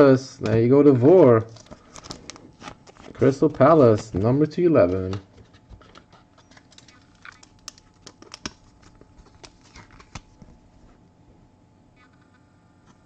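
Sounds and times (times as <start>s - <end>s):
trading cards clicking and rustling: 1.5s - 10.5s.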